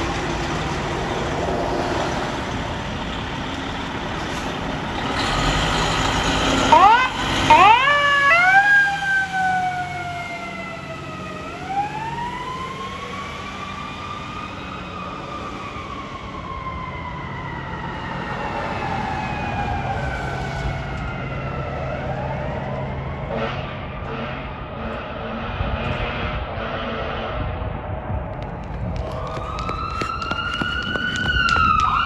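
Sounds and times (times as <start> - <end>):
fire engine siren: 0.0 - 32.0.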